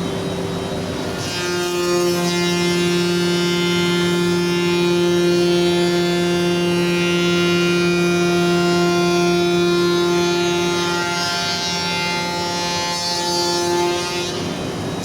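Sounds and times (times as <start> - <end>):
router spindle high whine: 0.0 - 10.9.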